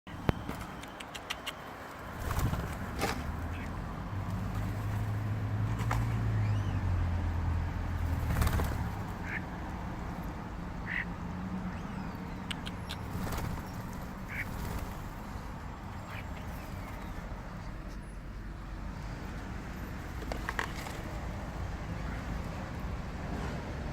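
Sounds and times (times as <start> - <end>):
sharp clicks: 0.2 - 1.8, 12.4 - 13.4
birds squawking: 8.0 - 9.6, 10.8 - 17.4.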